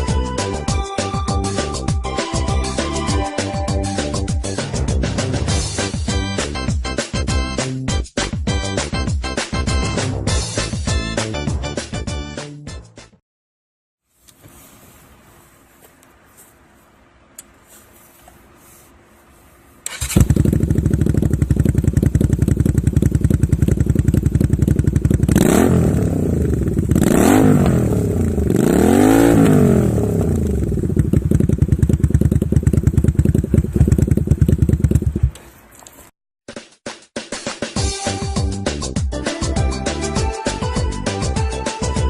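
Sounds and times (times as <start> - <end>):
motorcycle engine idling and revving: 19.9 - 35.6.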